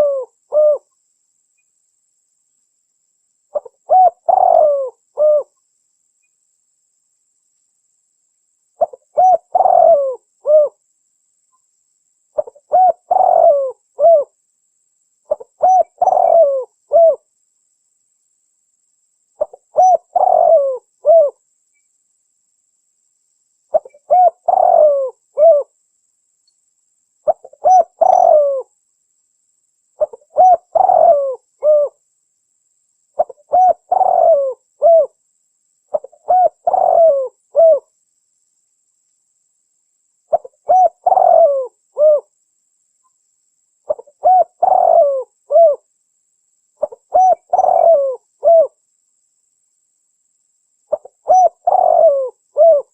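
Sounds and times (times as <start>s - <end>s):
dove cooing: 0.0s - 0.9s, 3.5s - 5.6s, 8.8s - 10.8s, 12.4s - 14.4s, 15.3s - 17.3s, 19.4s - 21.4s, 23.7s - 25.7s, 27.2s - 28.7s, 30.0s - 32.0s, 33.2s - 35.2s, 35.9s - 37.9s, 40.3s - 42.3s, 43.9s - 45.8s, 46.8s - 48.8s, 50.9s - 52.9s.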